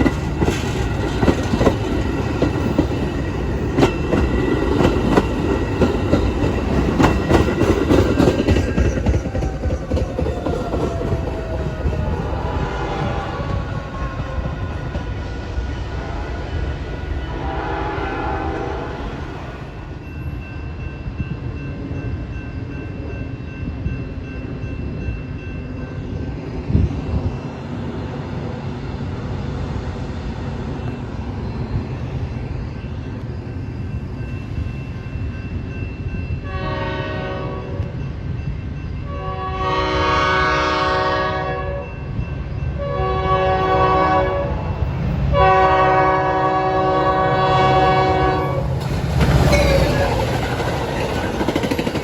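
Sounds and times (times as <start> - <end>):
passing train rumble: 0.0 - 52.0
locomotive air horn blasts: 16.0 - 16.6, 17.3 - 19.3, 36.4 - 37.8, 39.1 - 41.9, 42.8 - 44.6, 45.4 - 48.7.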